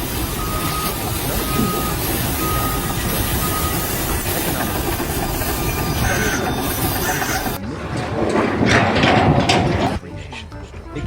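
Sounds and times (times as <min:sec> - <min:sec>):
back-up alarm beeping: 0:00.0 - 0:08.2
low machinery noise: 0:00.0 - 0:10.1.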